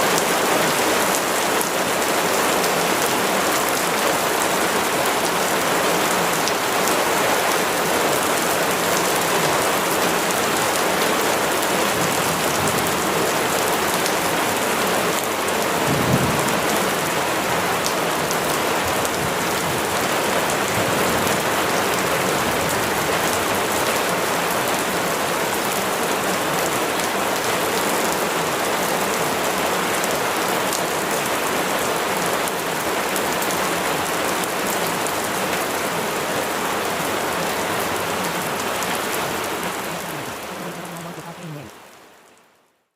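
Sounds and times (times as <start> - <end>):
heavy rain falling: 0.0 - 42.6.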